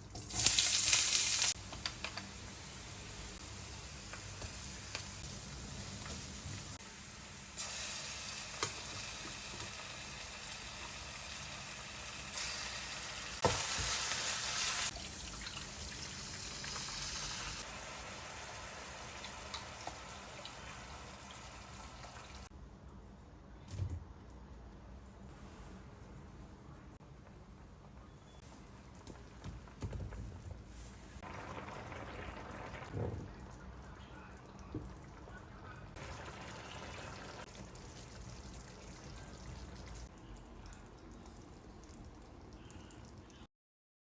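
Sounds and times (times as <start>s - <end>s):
food sizzling in a pan: 0.2s - 22.5s.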